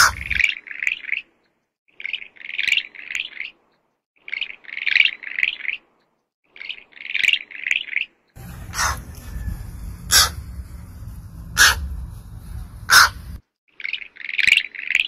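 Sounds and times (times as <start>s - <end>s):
high-pitched chirping calls: 8.4s - 13.4s.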